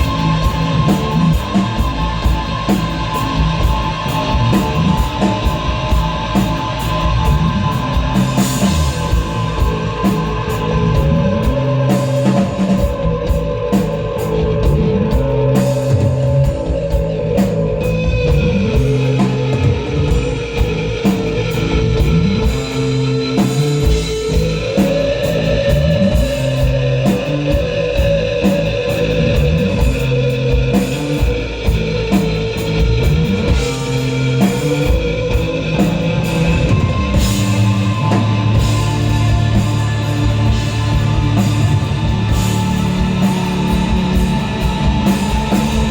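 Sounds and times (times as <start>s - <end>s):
bass line: 0.0s - 45.9s
drum kit with cymbals: 0.0s - 45.9s
electric guitar melody: 14.1s - 45.9s.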